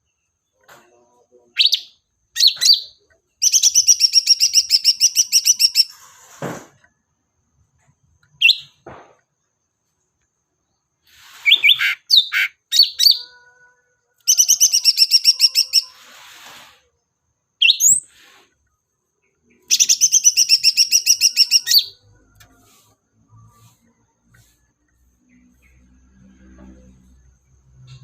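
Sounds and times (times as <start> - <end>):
recorded songbird calls: 14.2 - 16.3, 19.4 - 22.0.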